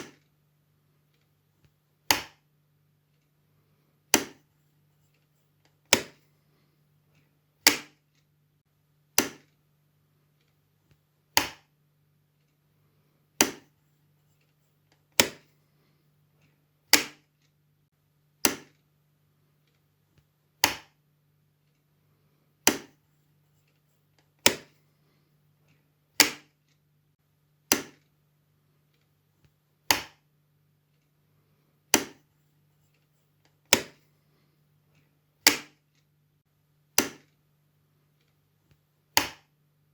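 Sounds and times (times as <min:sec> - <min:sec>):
faint steady hum: 0:00.0 - 0:39.9.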